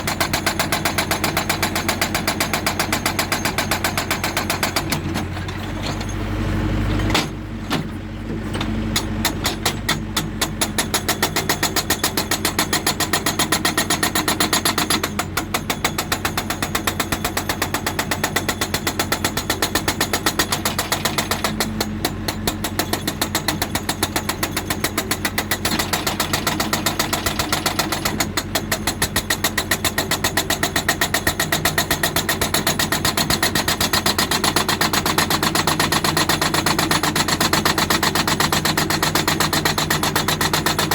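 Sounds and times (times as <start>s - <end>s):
hydraulic breaker hammering rock: 0.0s - 6.2s, 7.0s - 40.9s
diesel engine running: 0.0s - 11.0s.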